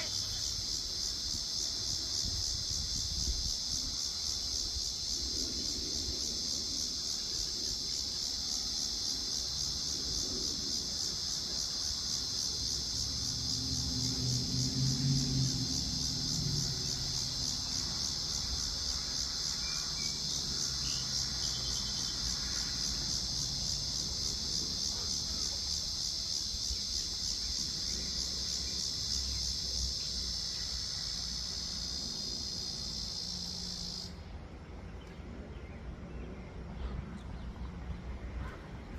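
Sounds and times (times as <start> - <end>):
insects trilling: 0.0 - 34.3.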